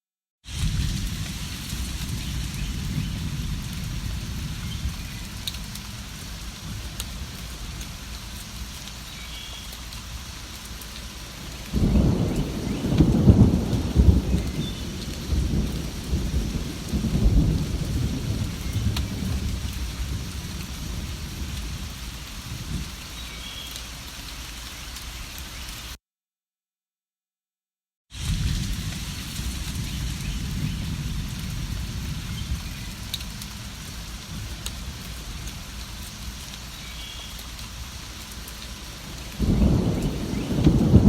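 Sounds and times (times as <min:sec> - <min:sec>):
steady rainfall: 0:00.4 - 0:26.0, 0:28.1 - 0:41.0
thunder rumbling: 0:00.5 - 0:08.1, 0:11.3 - 0:23.0, 0:28.2 - 0:36.4, 0:38.7 - 0:41.0.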